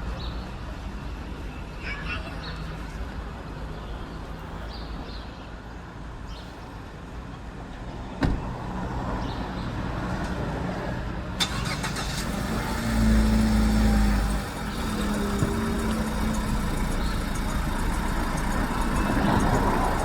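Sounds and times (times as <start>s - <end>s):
vehicle engine running: 12.0s - 20.0s.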